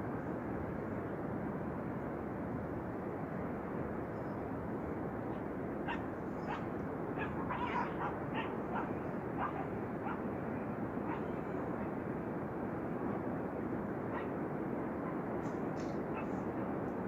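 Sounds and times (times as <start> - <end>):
high-pitched animal calls: 5.9 - 9.6.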